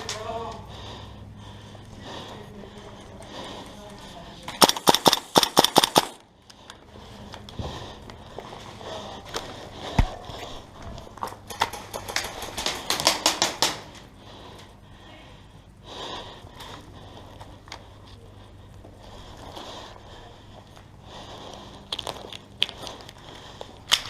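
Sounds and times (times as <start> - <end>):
soft breathing: 0.0 - 4.6, 6.2 - 11.3, 13.8 - 24.0
airsoft gunshots: 4.6 - 6.2.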